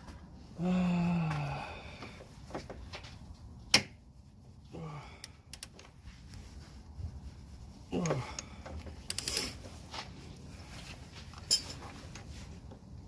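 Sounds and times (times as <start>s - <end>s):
person grunting: 0.6s - 2.0s, 4.7s - 5.2s, 7.9s - 8.4s
socket wrench clicking on metal: 5.5s - 5.8s.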